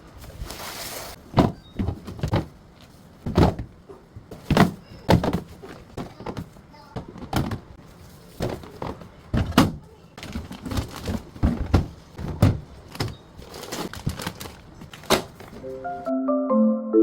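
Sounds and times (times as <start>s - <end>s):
light mallet percussion music: 15.7s - 17.0s.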